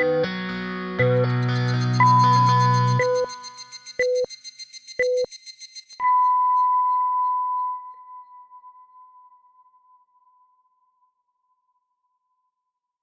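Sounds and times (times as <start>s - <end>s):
band music with electric guitar: 0.0s - 3.2s
telephone time signal beeps: 1.0s - 5.3s.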